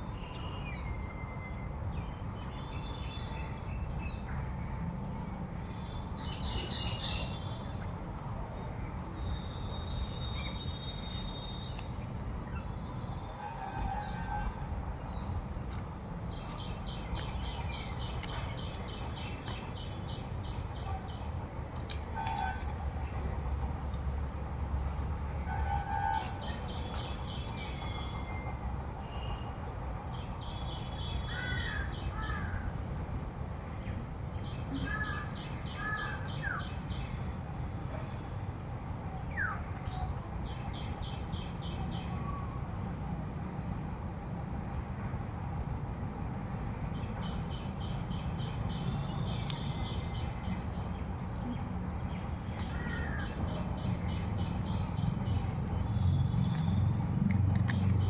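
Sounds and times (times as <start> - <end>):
high insect drone: 0.0 - 58.0
low steady rumble: 1.9 - 34.3.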